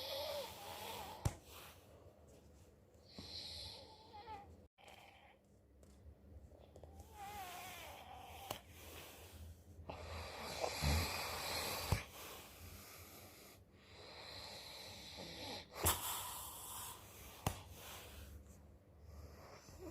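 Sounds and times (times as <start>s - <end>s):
man snoring with snorts: 9.9s - 12.2s.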